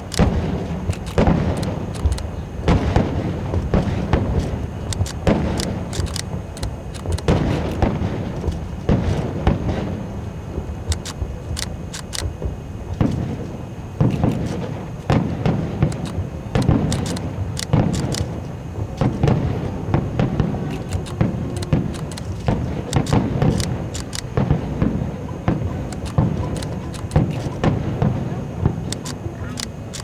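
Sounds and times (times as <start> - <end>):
deep rolling booms: 0.0 - 11.5
firework sharp cracks: 0.0 - 30.0.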